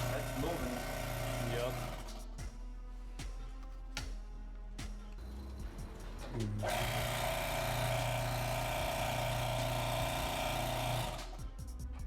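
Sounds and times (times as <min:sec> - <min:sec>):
electric hydraulic pump humming: 0:00.0 - 0:02.4, 0:05.2 - 0:11.6.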